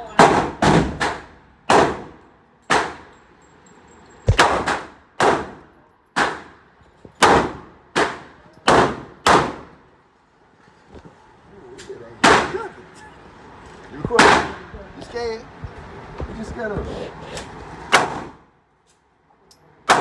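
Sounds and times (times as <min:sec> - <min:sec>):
gunshots with echo: 0:00.2 - 0:03.1, 0:04.3 - 0:06.6, 0:07.2 - 0:09.7, 0:14.2 - 0:14.6.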